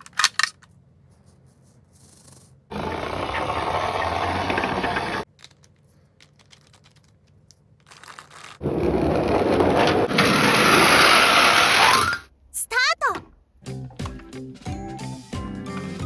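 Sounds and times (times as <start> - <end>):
toy cars rolling rattle: 2.8 - 7.2, 7.9 - 12.2.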